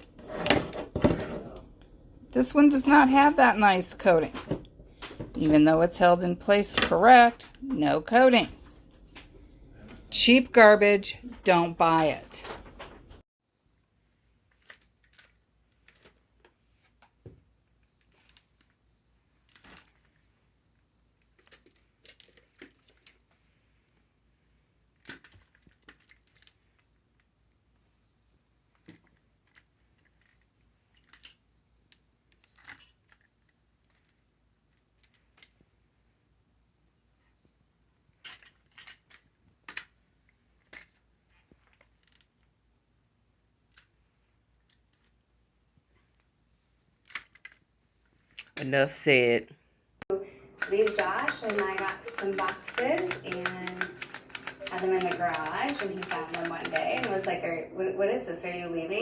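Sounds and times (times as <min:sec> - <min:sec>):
light clicks and taps: 0:50.6 - 0:57.6.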